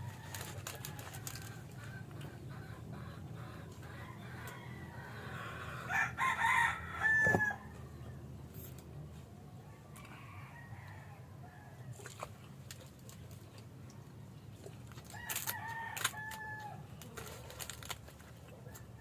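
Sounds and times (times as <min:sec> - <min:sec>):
rooster crowing: 0:04.0 - 0:07.7, 0:15.1 - 0:16.9.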